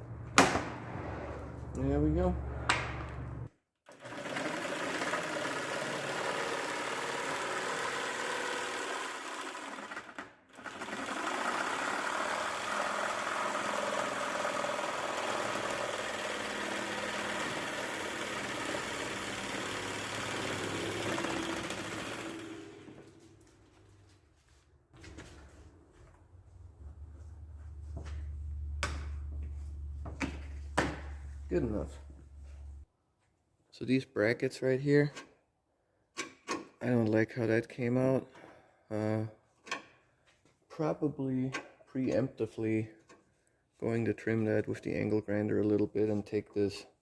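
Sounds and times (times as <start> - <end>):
angle grinder cutting metal panel: 11.6 - 22.9.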